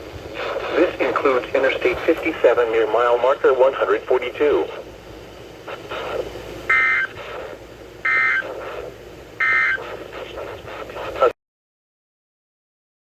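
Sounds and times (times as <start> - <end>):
noisy radio signal: 0.0 - 11.4
warbling two-tone data tones: 6.7 - 7.2, 8.1 - 8.6, 9.4 - 9.8.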